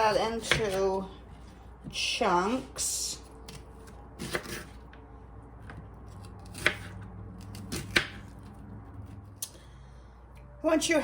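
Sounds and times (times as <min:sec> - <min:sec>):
knife chopping onion: 0:00.0 - 0:04.8, 0:05.6 - 0:09.4.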